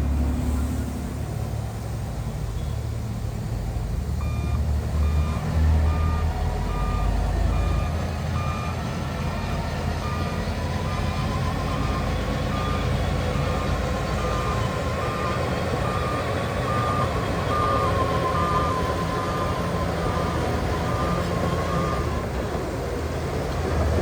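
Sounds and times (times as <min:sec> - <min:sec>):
diesel engines rumbling: 0:00.0 - 0:24.0
back-up alarm beeping: 0:04.2 - 0:08.8, 0:14.3 - 0:22.0.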